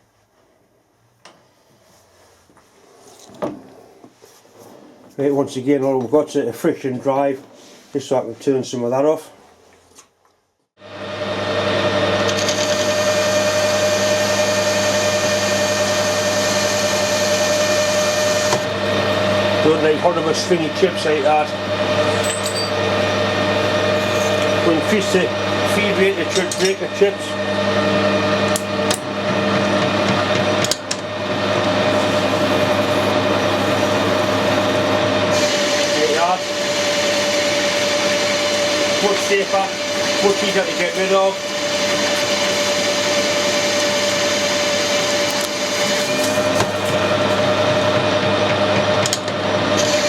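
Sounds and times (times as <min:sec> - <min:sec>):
lathe whine: 0:10.8 - 0:50.0
metal lathe hum: 0:10.8 - 0:50.0.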